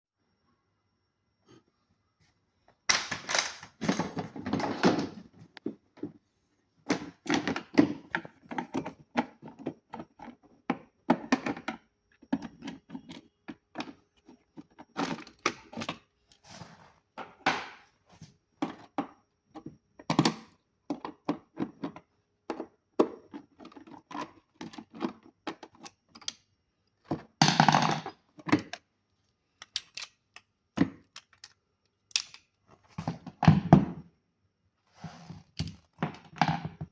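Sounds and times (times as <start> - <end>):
hands handling plastic device: 29.6 - 32.9.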